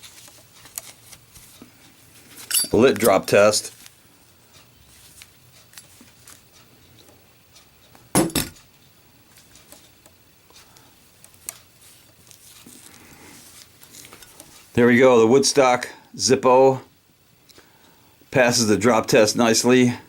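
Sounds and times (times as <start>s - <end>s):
faint handling clicks: 0.2s - 14.8s.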